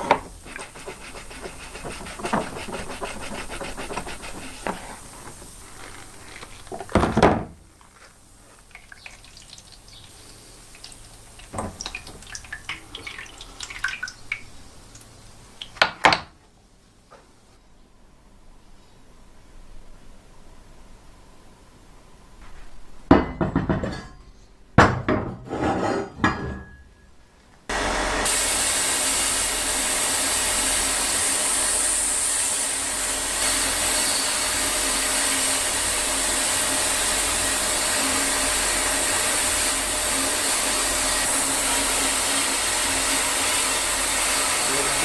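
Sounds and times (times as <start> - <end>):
wooden knocks and clatters: 1.8 - 4.9.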